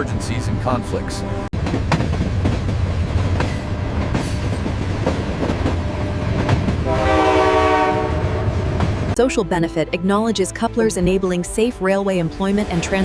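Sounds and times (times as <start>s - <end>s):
train horn: 0.0s - 1.5s, 6.8s - 8.9s
train rumbling on rails: 0.0s - 9.2s.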